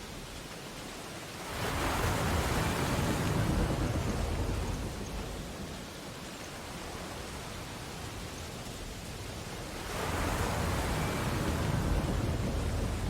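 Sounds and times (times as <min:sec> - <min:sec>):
background hiss of surf: 0:00.0 - 0:13.0
wave breaking on beach: 0:09.7 - 0:13.0.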